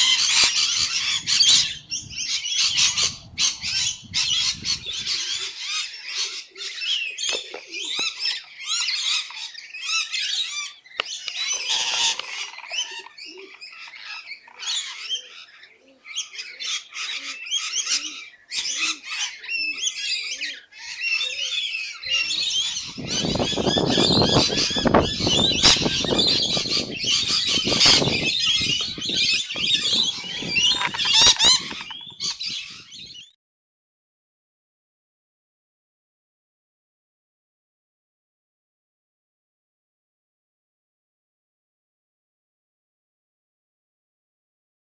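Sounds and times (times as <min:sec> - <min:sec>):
parrots chattering and screeching: 0:00.0 - 0:33.3.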